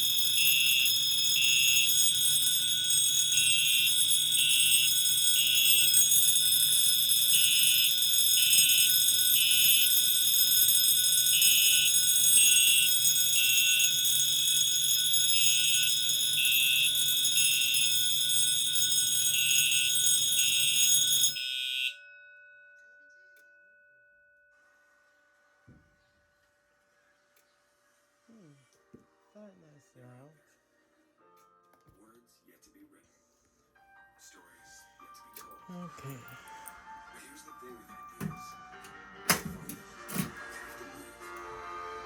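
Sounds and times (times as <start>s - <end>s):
pulsing alarm tone: 0.0s - 22.0s
high-pitched fire alarm tone: 0.0s - 22.3s.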